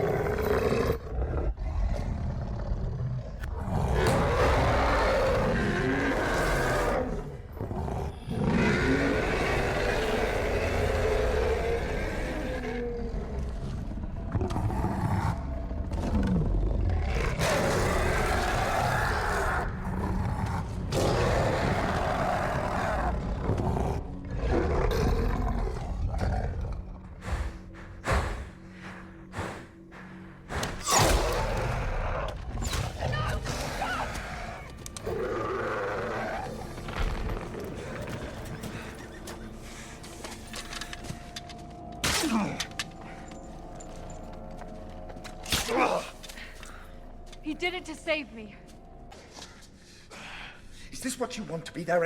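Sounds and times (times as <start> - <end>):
creature roaring and growling: 0.0 - 27.0, 30.8 - 38.9.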